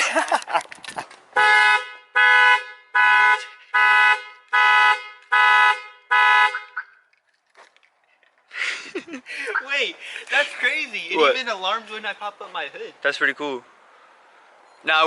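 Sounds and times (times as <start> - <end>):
car horn honking: 1.4 - 7.0.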